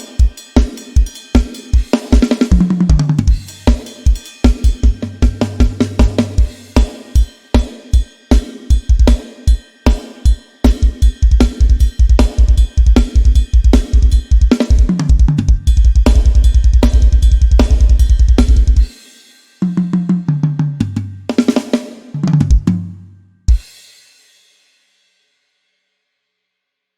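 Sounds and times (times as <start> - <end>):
drum beat with snare and cymbals: 0.0 - 25.0
fast double-kick drum run: 0.2 - 7.3, 8.7 - 9.2, 10.7 - 18.9, 22.2 - 22.8.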